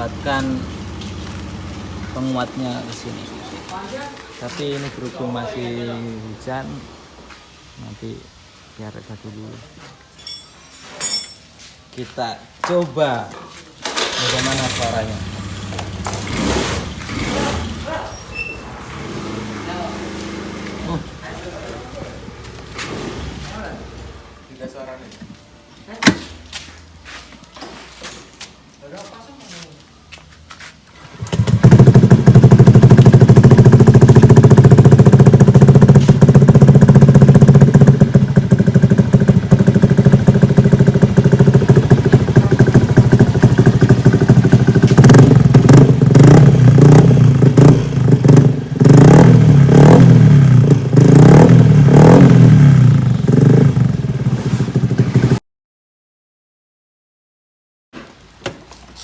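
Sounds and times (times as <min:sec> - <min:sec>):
scooter engine idling and revving: 0:00.0 - 0:04.0, 0:13.9 - 0:24.4, 0:31.0 - 0:55.4.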